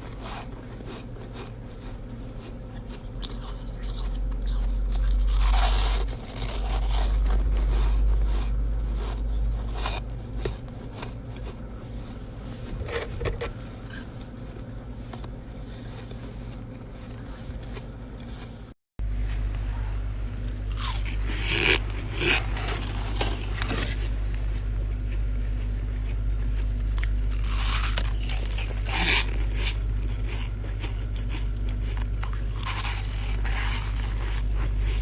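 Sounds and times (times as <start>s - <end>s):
freezer humming: 0.0s - 35.0s
ice being scraped: 5.2s - 10.0s.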